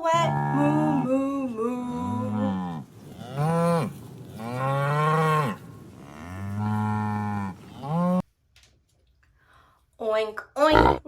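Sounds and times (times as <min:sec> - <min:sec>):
cow mooing: 0:00.1 - 0:01.2, 0:01.8 - 0:08.2, 0:10.7 - 0:11.0.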